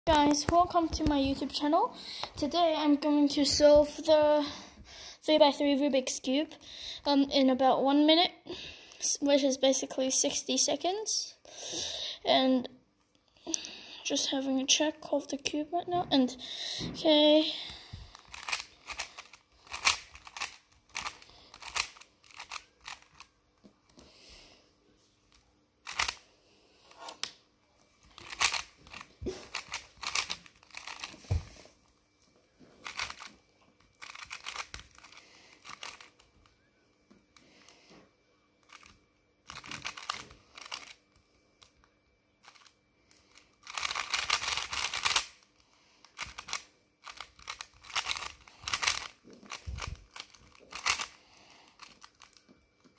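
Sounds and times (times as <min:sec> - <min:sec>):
puzzle cube clicking and snapping: 0:18.1 - 0:23.3, 0:25.8 - 0:26.2, 0:28.2 - 0:31.2, 0:32.8 - 0:33.3, 0:34.0 - 0:36.3, 0:38.7 - 0:41.0, 0:43.3 - 0:45.4, 0:46.2 - 0:51.2.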